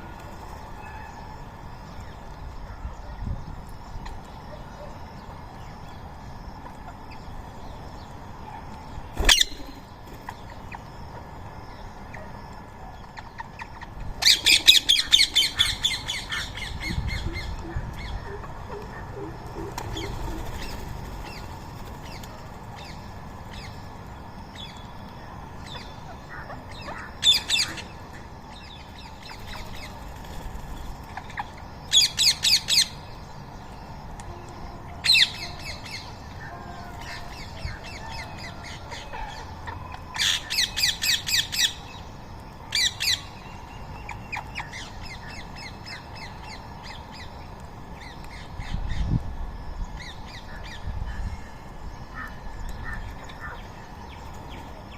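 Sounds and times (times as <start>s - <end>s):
parakeets screeching: 9.2s - 9.7s.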